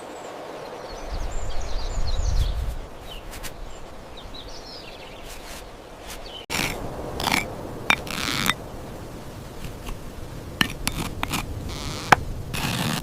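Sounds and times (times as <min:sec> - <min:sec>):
birds chirping: 0:00.0 - 0:12.3
steady background hiss: 0:02.7 - 0:13.0.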